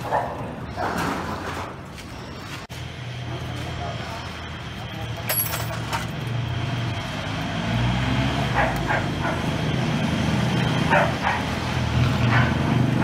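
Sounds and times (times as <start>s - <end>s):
engine droning: 2.7s - 13.0s
dog barking: 8.5s - 9.5s, 10.9s - 11.5s, 12.2s - 12.7s.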